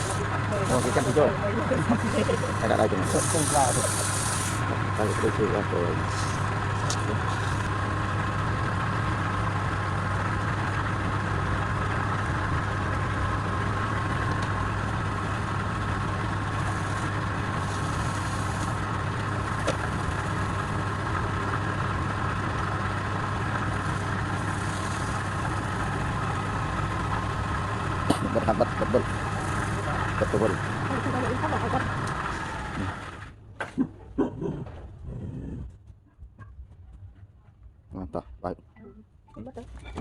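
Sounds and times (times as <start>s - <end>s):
wood lathe motor hum: 0.0s - 33.4s
faint hissing: 1.9s - 5.4s.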